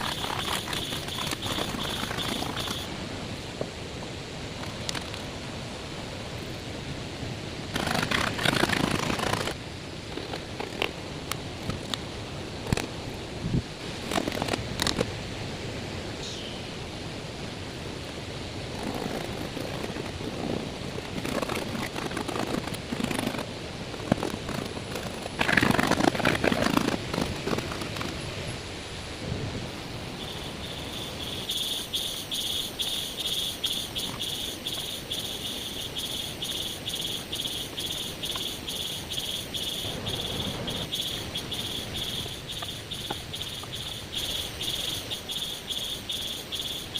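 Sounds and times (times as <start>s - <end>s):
cricket chirping: 0.0s - 3.0s, 29.7s - 46.9s
rustling and scraping: 18.8s - 28.2s.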